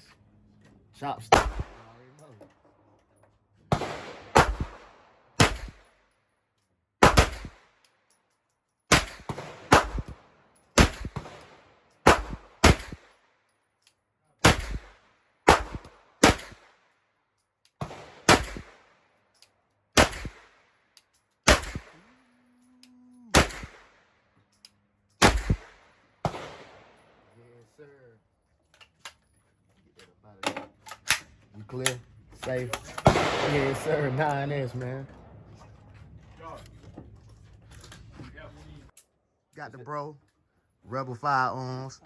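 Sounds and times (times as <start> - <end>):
gunshots echoing: 1.2 - 2.1, 3.7 - 5.9, 7.0 - 7.7, 8.9 - 13.2, 14.4 - 16.8, 17.8 - 19.0, 20.0 - 20.6, 21.4 - 22.1, 23.3 - 24.1, 25.2 - 27.3, 32.8 - 35.5.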